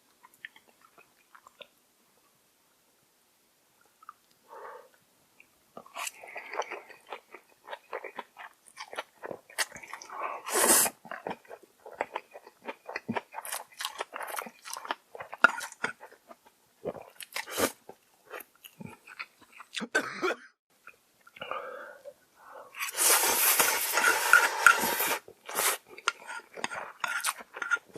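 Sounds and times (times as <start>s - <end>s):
person eating noodles: 5.8s - 19.3s, 22.7s - 27.9s.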